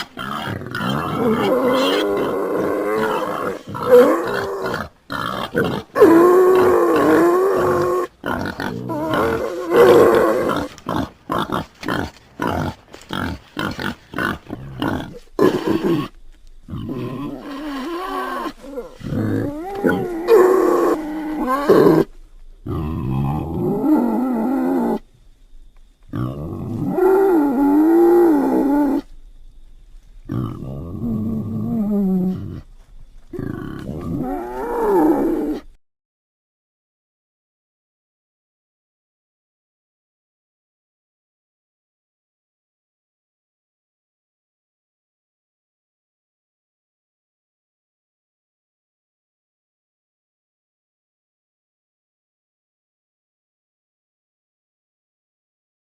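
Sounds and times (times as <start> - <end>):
pig grunting: 0.0 - 25.0, 26.1 - 29.1, 30.3 - 32.7, 33.3 - 35.7.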